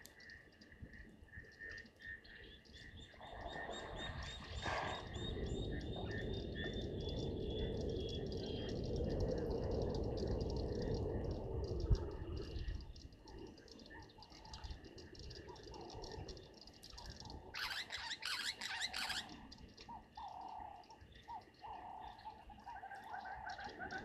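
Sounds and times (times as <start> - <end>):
frogs chirping: 0.0 - 24.0.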